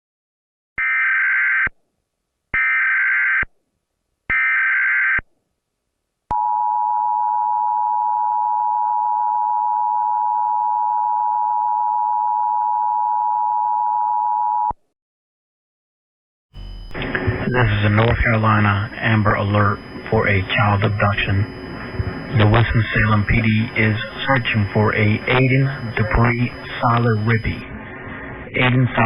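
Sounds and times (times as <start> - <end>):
digital data bursts: 16.6 - 27.6
two-tone attention signal: 16.6 - 27.6.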